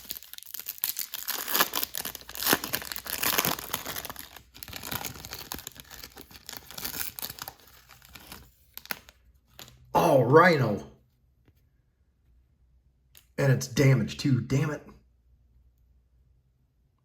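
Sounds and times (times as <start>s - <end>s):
foil wrapper tearing and crinkling: 0.0s - 9.7s.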